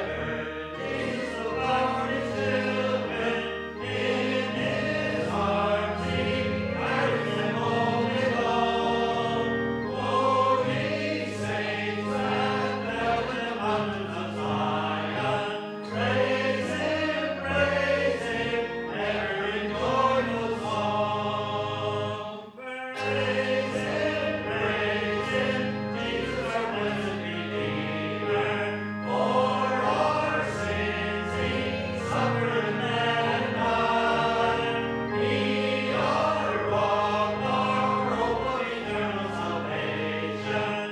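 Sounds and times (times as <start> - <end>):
instrumental accompaniment: 0.0 - 22.3, 23.0 - 40.9
congregation singing a hymn: 0.0 - 40.9.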